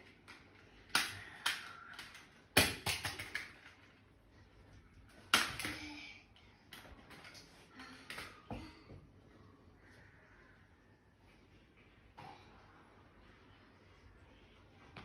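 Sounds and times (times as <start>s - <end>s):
sharp clicks and cracks of eating: 0.0s - 4.0s.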